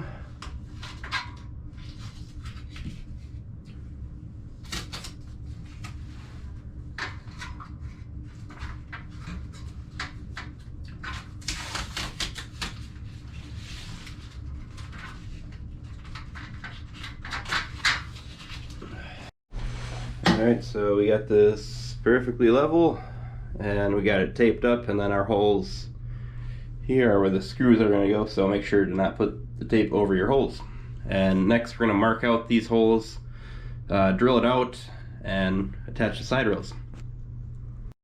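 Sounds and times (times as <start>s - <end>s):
steady low hum: 0.0s - 38.0s.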